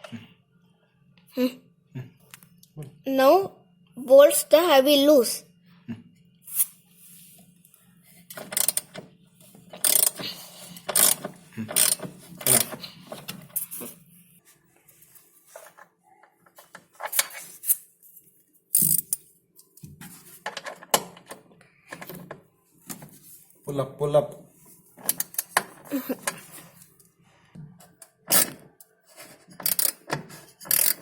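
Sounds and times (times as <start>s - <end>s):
hand tools clicking on metal: 9.8s - 13.4s, 29.6s - 30.0s, 30.6s - 31.0s.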